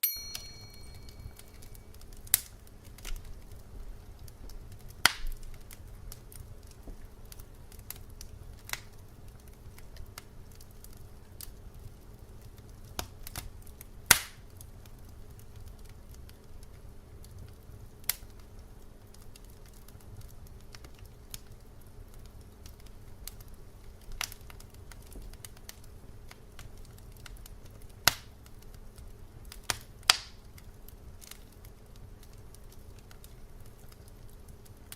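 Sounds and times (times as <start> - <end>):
brief high tone: 0.0 - 1.8
wood fire crackling and popping: 0.5 - 34.9.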